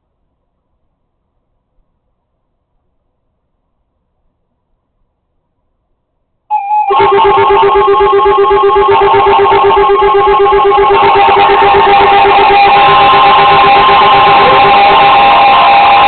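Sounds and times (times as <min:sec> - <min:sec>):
loud steady alarm tone: 0:06.5 - 0:16.0
fast pulsing buzz: 0:06.9 - 0:16.0
radio static: 0:07.0 - 0:16.0.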